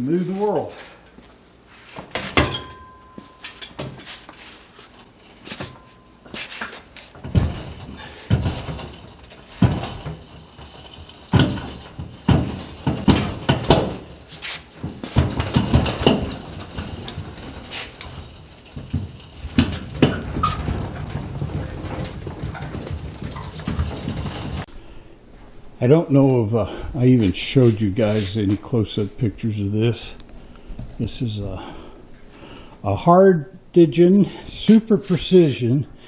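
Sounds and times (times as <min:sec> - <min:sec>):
heavy metal machinery clunking: 0:07.1 - 0:24.7.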